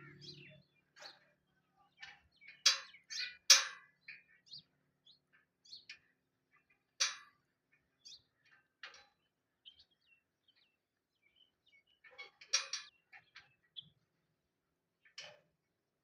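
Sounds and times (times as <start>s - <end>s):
small birds chirping: 0.0s - 15.2s.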